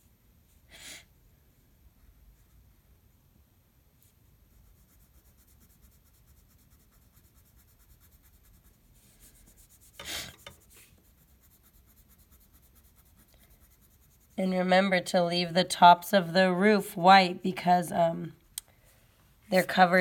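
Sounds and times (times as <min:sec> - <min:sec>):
drawing tool scratching on paper: 0:04.5 - 0:14.4.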